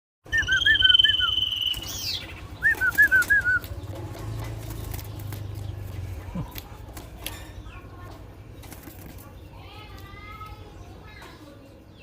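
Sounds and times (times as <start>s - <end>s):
bird whistling and chirping: 0.2s - 3.8s.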